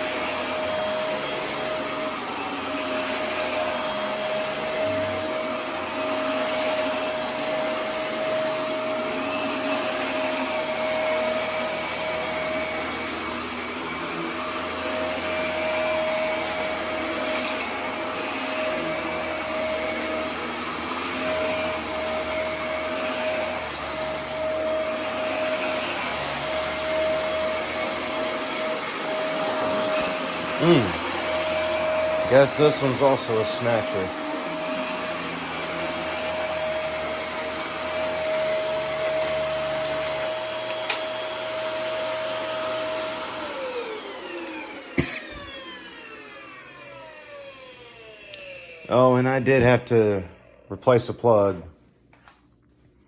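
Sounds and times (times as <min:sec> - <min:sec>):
vacuum cleaner running: 0:00.0 - 0:51.7.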